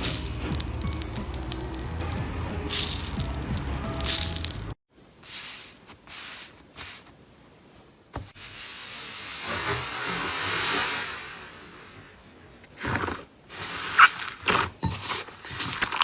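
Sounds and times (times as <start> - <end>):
background music: 0.0 - 4.8
slime squishing: 13.9 - 16.0.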